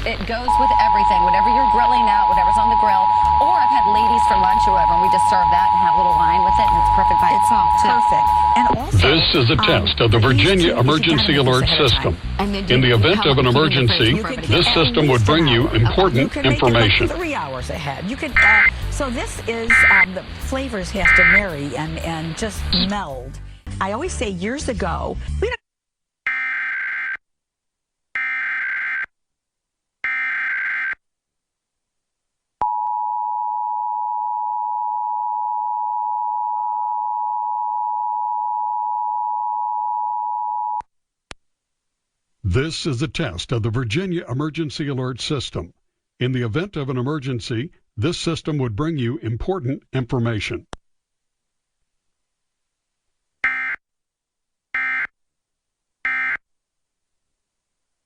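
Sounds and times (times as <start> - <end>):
two-tone attention signal: 0.5 - 12.1, 12.7 - 17.1, 18.4 - 18.7, 19.7 - 20.1, 21.0 - 21.4
buzzy warbling data bursts: 18.2 - 18.8, 19.7 - 20.2, 21.0 - 21.5.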